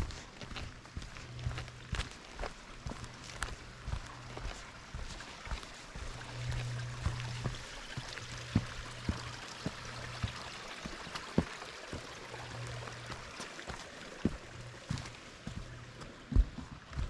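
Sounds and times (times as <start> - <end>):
footstep thuds: 6.5 - 10.5, 14.3 - 17.0.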